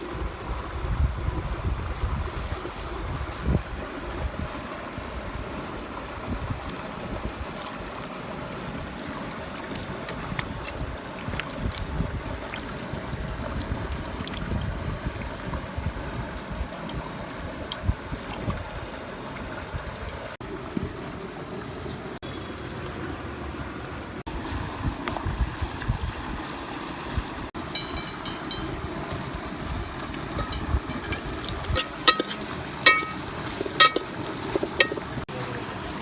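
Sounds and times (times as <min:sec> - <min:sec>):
wind buffeting microphone: 0:00.0 - 0:07.6, 0:10.2 - 0:21.0, 0:24.3 - 0:35.3
mountain stream rushing: 0:00.0 - 0:14.2, 0:15.8 - 0:36.0.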